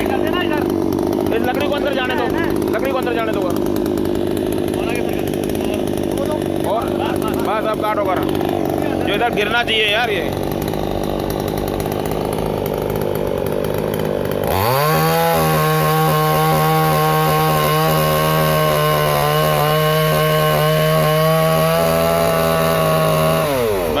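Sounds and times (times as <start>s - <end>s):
chainsaw cutting wood: 0.0s - 24.0s.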